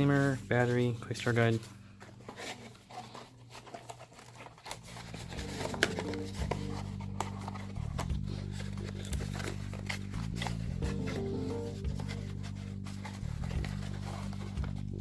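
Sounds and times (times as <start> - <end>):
packaging rustling and clicking: 2.0 - 15.0
background music: 4.8 - 15.0.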